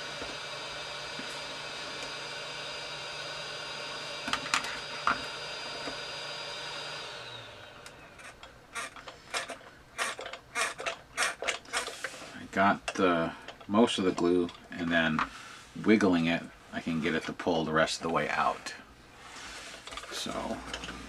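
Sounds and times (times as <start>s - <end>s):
heat gun blowing with a whine: 0.0s - 9.4s
screwdriver clicking and scraping: 8.2s - 12.2s.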